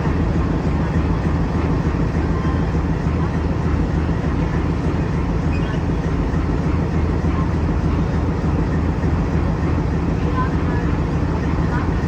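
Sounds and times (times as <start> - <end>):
diesel locomotive engine humming: 0.0 - 12.0.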